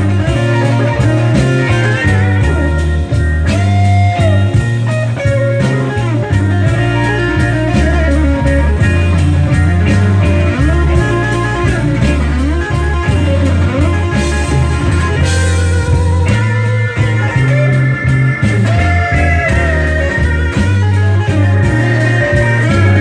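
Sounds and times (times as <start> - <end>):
bass line: 0.0 - 23.0
blues guitar solo: 0.0 - 23.0
drums: 0.0 - 23.0.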